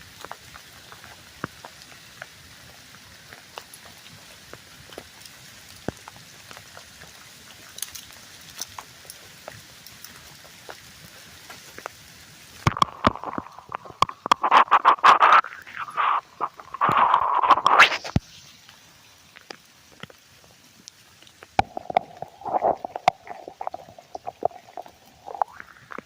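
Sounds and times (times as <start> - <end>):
steady hiss with light taps: 0.0 - 26.0
scraping and knocking on microphone: 12.7 - 18.2, 21.6 - 25.6.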